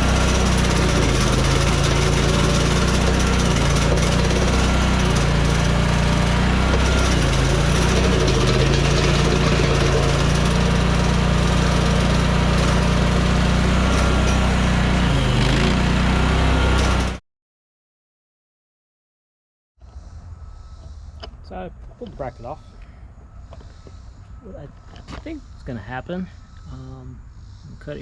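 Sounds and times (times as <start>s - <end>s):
skid steer engine running: 0.0s - 17.2s.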